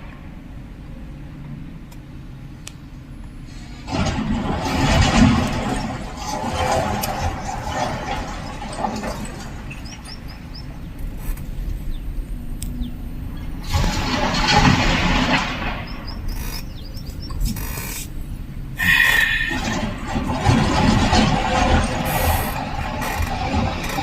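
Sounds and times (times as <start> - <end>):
heavy machinery rumbling: 0.0 - 24.0
bird chirps: 11.7 - 13.5, 15.9 - 18.0.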